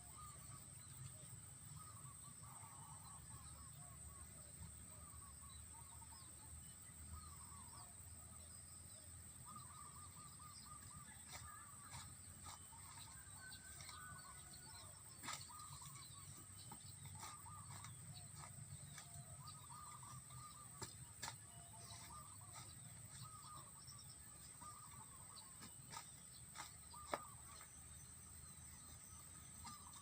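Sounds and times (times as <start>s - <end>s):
short bird calls: 9.4s - 27.8s.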